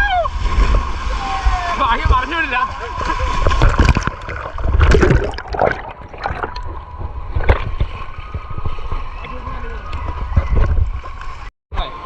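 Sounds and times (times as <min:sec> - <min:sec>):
water splashing and sloshing: 0:00.3 - 0:11.5.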